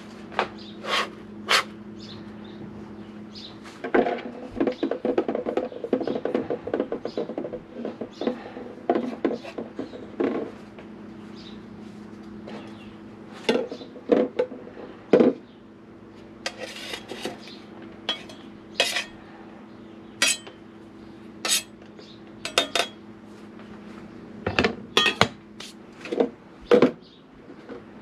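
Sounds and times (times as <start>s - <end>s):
dishes and utensils clinking: 18.1s - 19.2s, 20.2s - 20.6s, 21.4s - 21.8s, 22.5s - 23.0s, 25.0s - 25.3s.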